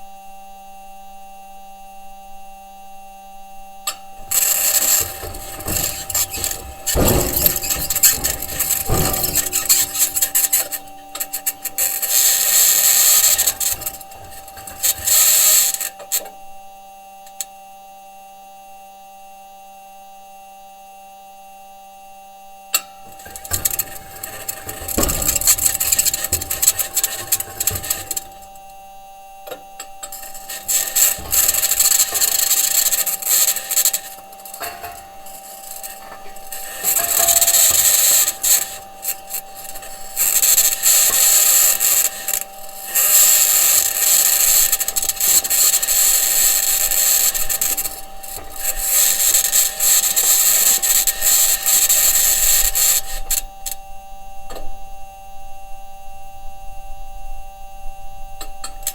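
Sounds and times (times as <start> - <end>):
low noise of wheels on ground: 3.9 - 16.3, 22.8 - 53.8
high-pitched scratching: 4.2 - 16.0, 23.0 - 28.6, 30.0 - 53.2.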